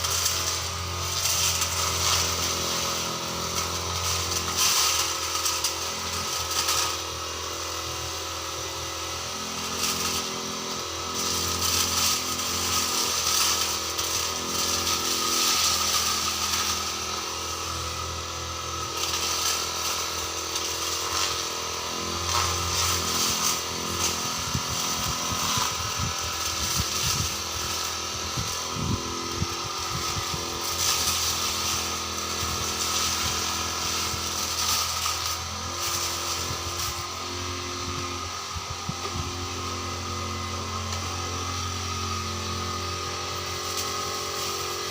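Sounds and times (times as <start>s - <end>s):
brush cutter engine revving: 0.0s - 44.9s.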